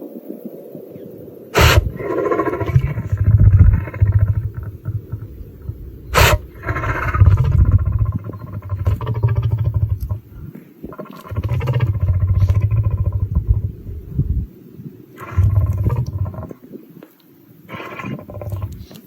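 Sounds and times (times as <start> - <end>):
lion sneezing: 1.6 - 13.7, 15.2 - 16.6, 17.7 - 19.0
lion grunting rumbles: 1.6 - 14.5, 15.2 - 16.6, 17.7 - 19.0.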